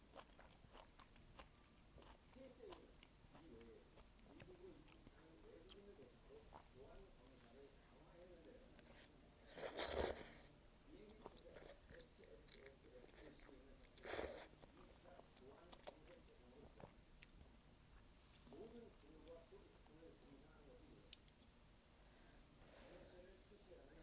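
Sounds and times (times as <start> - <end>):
person chewing: 0.0 - 6.8, 8.7 - 18.6.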